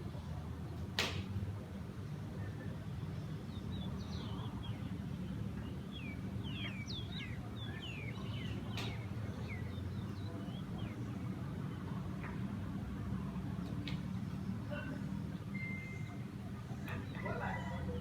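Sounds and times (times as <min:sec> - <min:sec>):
sharp click: 0:01.0 - 0:01.3
small birds chirping: 0:02.0 - 0:12.6, 0:13.7 - 0:18.0.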